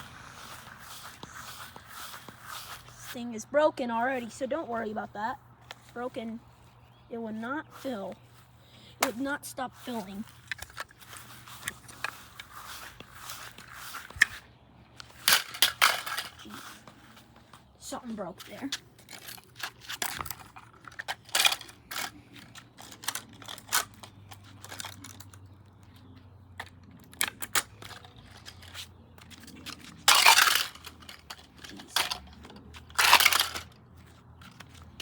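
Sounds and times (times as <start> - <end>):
plastic parts cracking and snapping: 19.0 - 25.4, 26.6 - 33.8.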